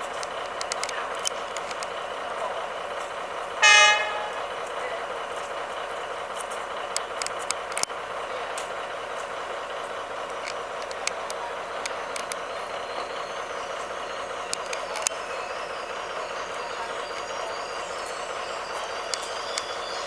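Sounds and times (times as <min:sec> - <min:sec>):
sharp clicks: 0:00.0 - 0:02.0, 0:06.5 - 0:07.9, 0:10.3 - 0:12.6, 0:14.5 - 0:15.2
train running noise: 0:00.0 - 0:20.0
locomotive horn toot: 0:03.6 - 0:04.5.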